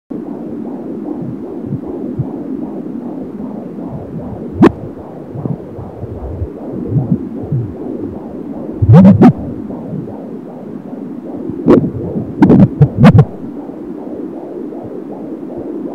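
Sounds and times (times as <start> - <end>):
fetal heartbeat on doppler: 0.6 - 15.8
low thumps: 1.2 - 2.4, 3.8 - 10.2, 11.4 - 13.4.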